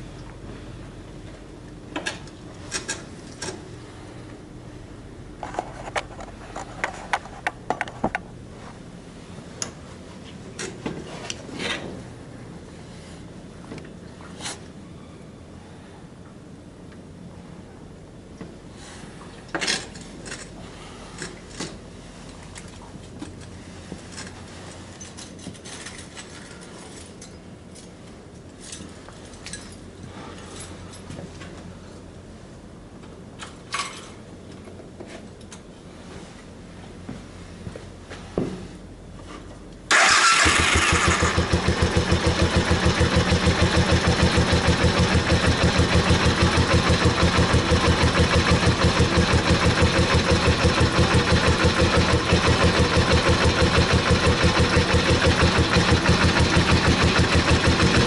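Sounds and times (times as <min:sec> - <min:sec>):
steady low hum: 0:00.0 - 0:25.3.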